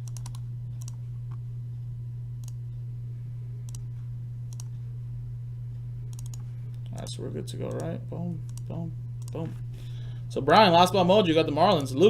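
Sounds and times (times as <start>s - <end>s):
computer mouse clicks: 0.0s - 1.4s, 2.4s - 2.6s, 4.5s - 4.7s, 6.1s - 7.1s
low hum: 0.0s - 12.0s.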